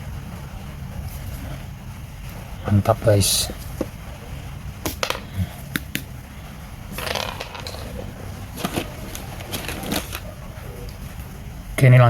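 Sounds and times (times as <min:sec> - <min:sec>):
cable rustling scrape: 0:06.9 - 0:10.4.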